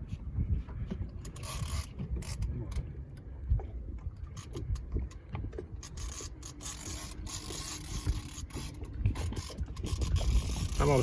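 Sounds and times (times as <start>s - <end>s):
fishing reel whirring: 1.2s - 2.5s, 5.8s - 11.0s.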